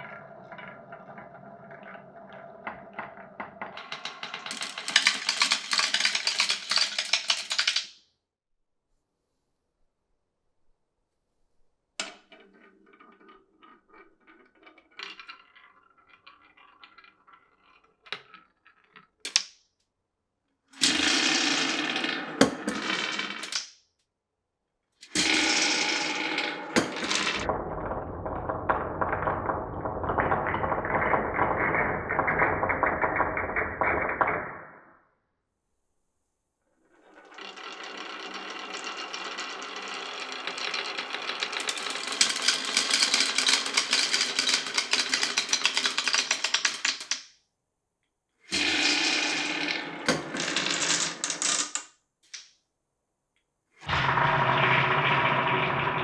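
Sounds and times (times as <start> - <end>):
marbles rolling and clattering: 0.0 - 8.0, 12.0 - 19.5, 20.8 - 23.7, 25.0 - 34.9, 37.0 - 47.3, 48.5 - 52.5, 53.8 - 56.0.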